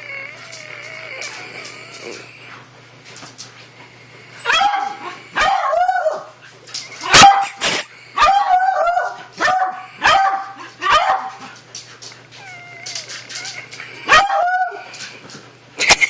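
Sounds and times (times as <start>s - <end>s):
dog barking high-pitched: 4.4s - 6.2s, 7.0s - 11.4s, 14.1s - 14.8s.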